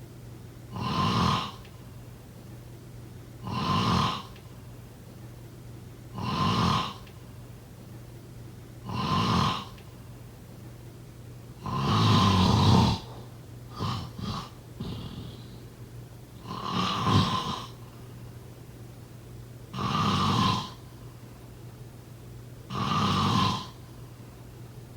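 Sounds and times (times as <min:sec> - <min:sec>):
steady low hum: 0:00.0 - 0:24.9
person snoring: 0:00.8 - 0:01.6, 0:03.4 - 0:04.3, 0:06.2 - 0:07.0, 0:08.9 - 0:09.8, 0:11.6 - 0:15.7, 0:16.4 - 0:17.8, 0:19.8 - 0:20.8, 0:22.7 - 0:23.8
short snorts: 0:00.8 - 0:01.6, 0:03.4 - 0:04.3, 0:06.2 - 0:07.0, 0:11.6 - 0:15.7, 0:16.4 - 0:17.8, 0:19.8 - 0:20.8, 0:22.7 - 0:23.8.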